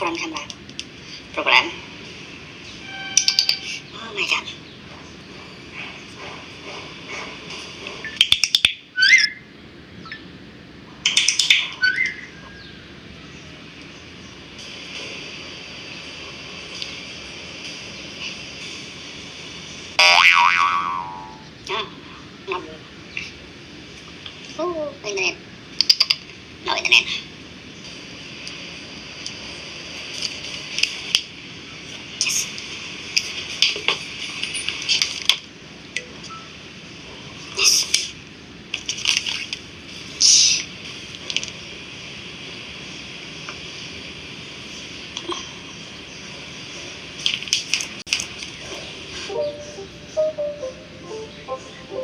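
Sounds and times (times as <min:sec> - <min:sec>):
steady hiss: 0:00.1 - 0:08.2, 0:12.3 - 0:20.1, 0:21.0 - 0:52.0
bird calling with clicks and chirp: 0:03.1 - 0:03.8, 0:11.1 - 0:12.7.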